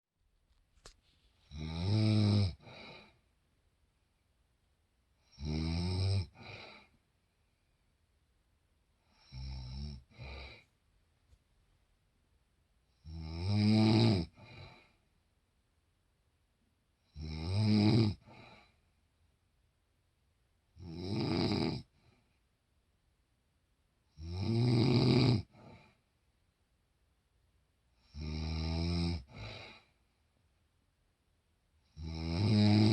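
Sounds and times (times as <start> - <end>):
quiet breathing: 0.8 - 3.4, 6.2 - 8.0, 9.0 - 10.8, 14.2 - 15.2, 18.2 - 19.1, 21.8 - 22.6, 25.4 - 26.2, 29.2 - 30.4
woman snoring: 1.5 - 3.2, 5.2 - 6.9, 9.0 - 10.6, 13.0 - 15.0, 17.1 - 18.7, 20.8 - 22.0, 24.2 - 25.9, 28.0 - 29.9, 31.9 - 32.9.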